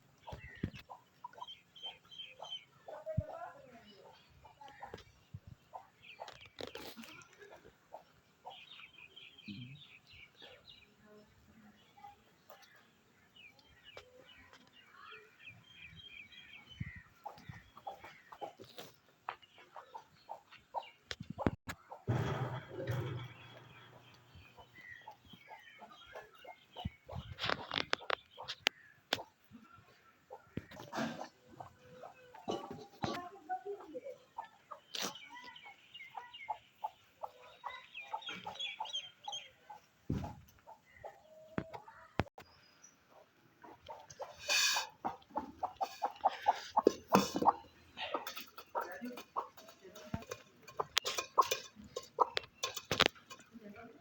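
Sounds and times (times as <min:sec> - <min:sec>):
songbird chirping: 0:00.0 - 0:54.0
hen clucking: 0:00.2 - 0:08.7, 0:16.6 - 0:42.4, 0:43.1 - 0:53.5.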